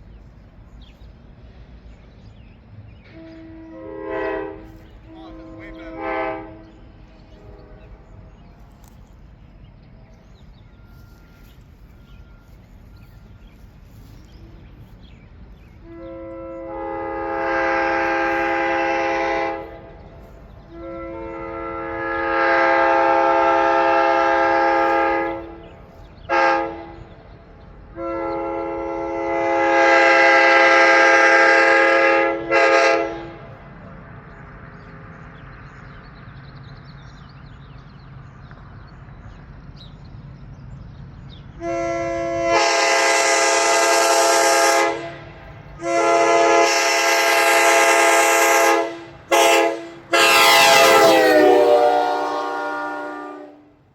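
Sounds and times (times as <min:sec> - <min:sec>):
locomotive air horn chord: 0:03.0 - 0:08.4, 0:15.7 - 0:25.7, 0:26.3 - 0:27.2, 0:27.9 - 0:33.6, 0:41.6 - 0:53.8.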